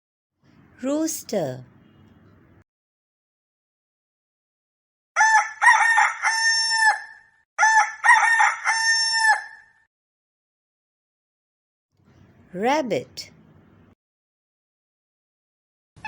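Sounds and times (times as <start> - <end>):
rooster crowing: 5.2 - 9.8.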